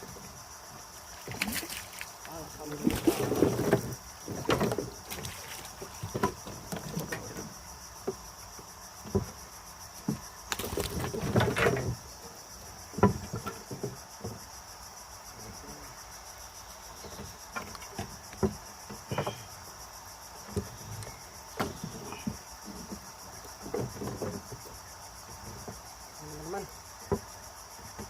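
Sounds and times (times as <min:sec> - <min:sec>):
crickets chirring: 0:00.0 - 0:28.0
rustling: 0:01.1 - 0:07.6, 0:09.3 - 0:12.5
knocks and thumps: 0:01.2 - 0:14.5, 0:17.0 - 0:19.6, 0:20.4 - 0:28.0.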